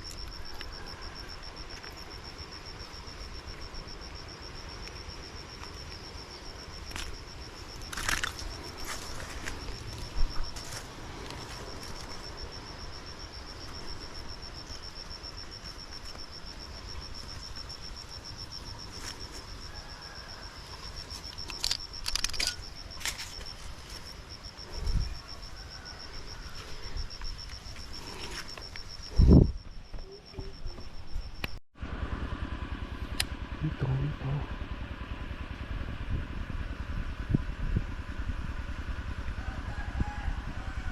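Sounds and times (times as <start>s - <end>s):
insect trilling: 0.0s - 31.6s
sharp clicks: 21.3s - 23.5s, 31.4s - 31.6s.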